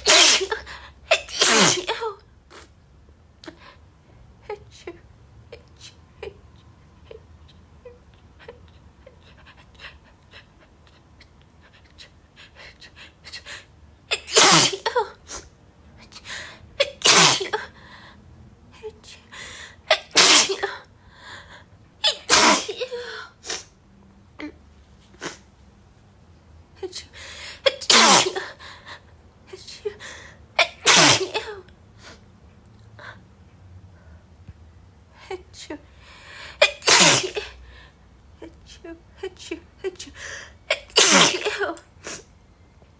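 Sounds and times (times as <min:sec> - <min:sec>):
woman sneezing: 0:00.0 - 0:02.1, 0:14.1 - 0:15.5, 0:16.8 - 0:17.7, 0:19.9 - 0:20.8, 0:22.0 - 0:23.7, 0:27.5 - 0:28.6, 0:30.6 - 0:31.6, 0:36.6 - 0:37.6, 0:40.7 - 0:42.2.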